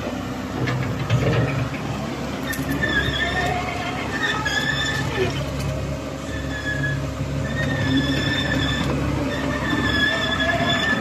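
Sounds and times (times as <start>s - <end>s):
excavator diesel engine running: 0.0s - 11.0s
high-pitched squeals: 2.4s - 5.6s, 6.2s - 11.0s.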